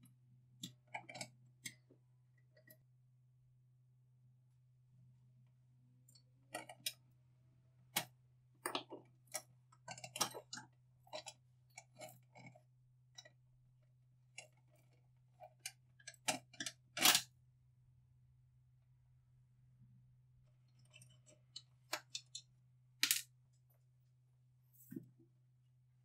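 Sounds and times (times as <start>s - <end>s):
sharp clicks and knocks: 20.9s - 23.3s.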